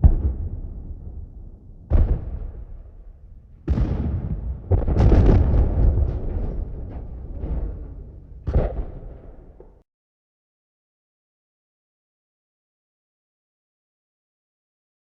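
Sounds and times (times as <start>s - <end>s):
distant explosions rumbling: 0.0s - 9.8s.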